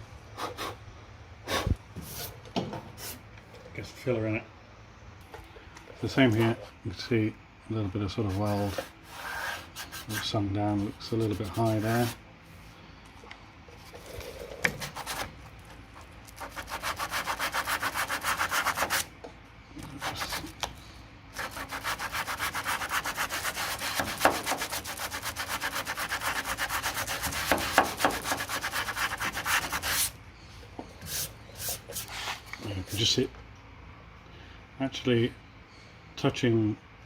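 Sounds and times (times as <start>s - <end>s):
hand sanding strokes on metal: 8.1s - 12.2s, 16.4s - 19.1s, 21.4s - 30.1s.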